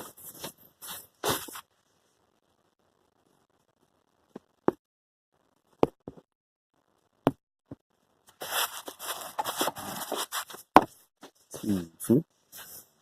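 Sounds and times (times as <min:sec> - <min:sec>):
scraping and rustling: 0:08.3 - 0:11.6.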